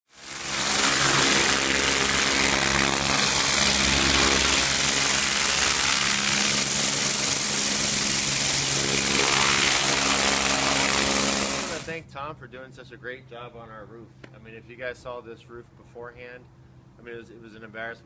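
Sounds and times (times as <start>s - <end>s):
pressure washer engine running: 0.1s - 12.0s
constant hiss: 0.1s - 18.0s.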